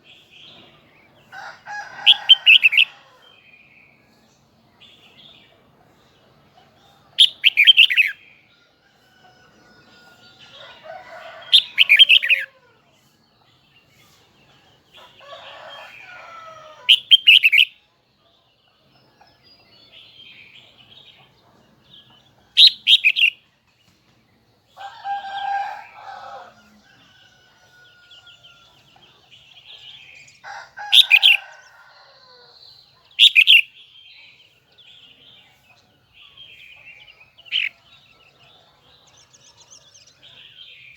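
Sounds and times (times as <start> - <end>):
bird singing high phrases: 7.2 - 8.2, 16.9 - 17.8, 22.6 - 23.5, 32.5 - 34.2.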